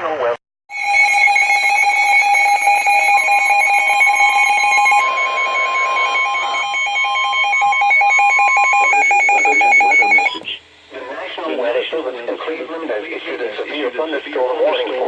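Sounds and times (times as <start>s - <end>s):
pulsing electronic alarm beep: 0.7s - 10.5s
steady electronic tone: 0.7s - 10.5s.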